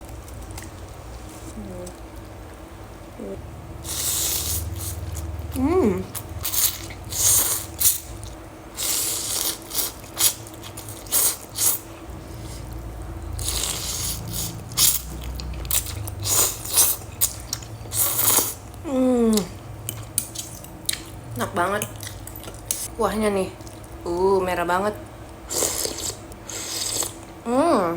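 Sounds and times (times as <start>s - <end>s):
noodle slurping: 3.8s - 5.3s, 6.1s - 8.1s, 13.4s - 15.1s, 15.7s - 18.6s, 25.5s - 27.2s
person humming: 5.6s - 6.2s, 18.8s - 19.5s
wet chewing: 13.4s - 21.2s.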